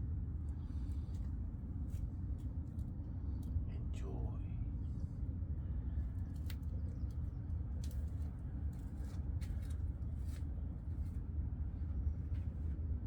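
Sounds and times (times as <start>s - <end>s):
low outdoor rumble: 0.0s - 13.0s.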